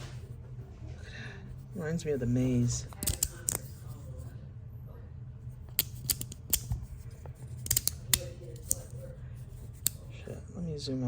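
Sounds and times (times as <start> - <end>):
fidget slider clicking: 7.6 - 8.8.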